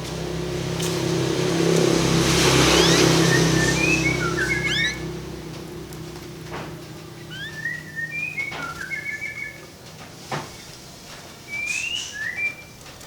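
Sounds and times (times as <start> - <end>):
canary singing: 2.5 - 5.4, 7.1 - 9.7, 11.5 - 12.8.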